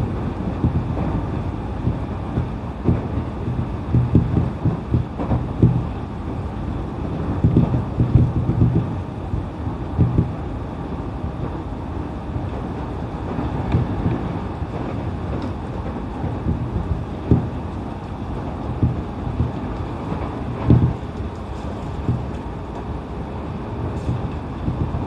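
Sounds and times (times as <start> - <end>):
short low thumps: 0.0 - 6.0, 7.2 - 10.5, 16.2 - 22.5, 23.4 - 25.0
train wheels rumbling on track: 0.0 - 25.0.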